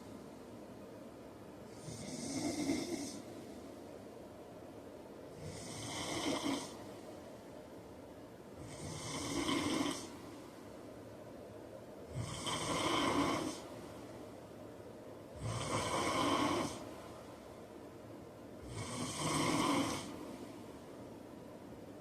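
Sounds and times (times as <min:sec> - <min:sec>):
man snoring: 0:01.8 - 0:03.2, 0:05.4 - 0:06.8, 0:08.6 - 0:10.1, 0:12.1 - 0:13.6, 0:15.4 - 0:16.8, 0:18.6 - 0:20.2.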